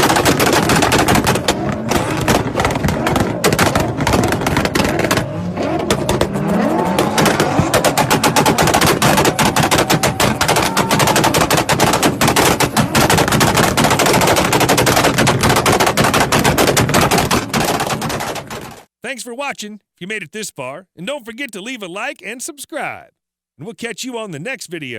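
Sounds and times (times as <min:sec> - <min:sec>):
car engine revving: 0:00.0 - 0:15.1
exhaust pops and bangs: 0:00.0 - 0:18.9.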